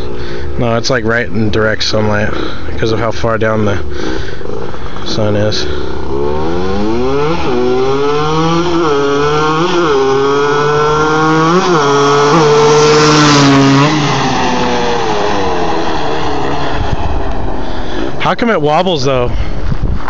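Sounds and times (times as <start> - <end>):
quad engine accelerating past: 3.8 - 18.3.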